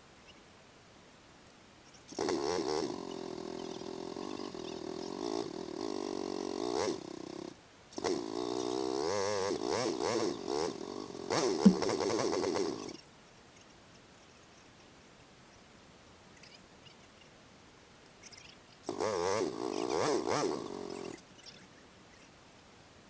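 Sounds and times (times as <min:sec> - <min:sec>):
engine revving: 0:08.0 - 0:12.9, 0:18.9 - 0:21.2.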